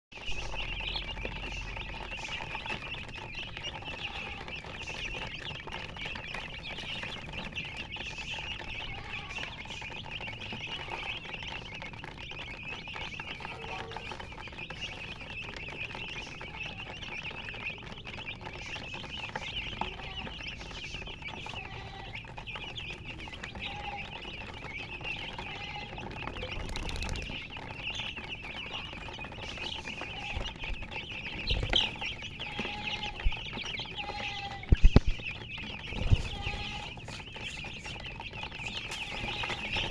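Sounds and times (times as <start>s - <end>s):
chicks chirping in chorus: 0.2s - 39.9s
hen clucks: 18.5s - 38.0s.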